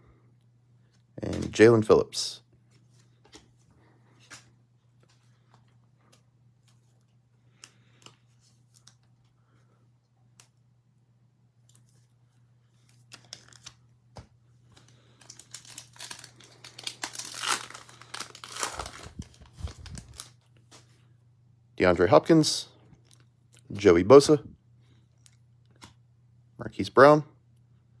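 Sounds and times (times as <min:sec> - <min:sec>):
wrapper tearing and crinkling: 0:15.1 - 0:20.4.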